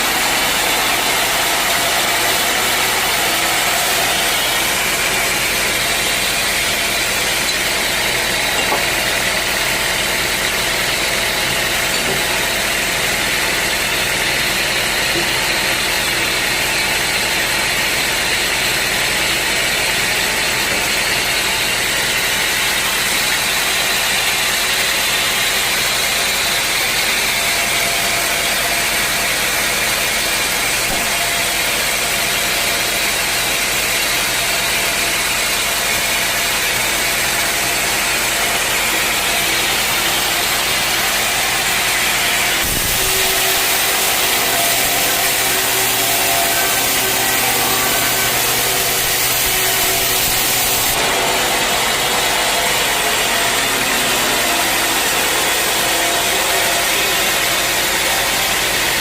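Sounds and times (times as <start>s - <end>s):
sawmill machinery hiss and hum: 0.0s - 59.0s.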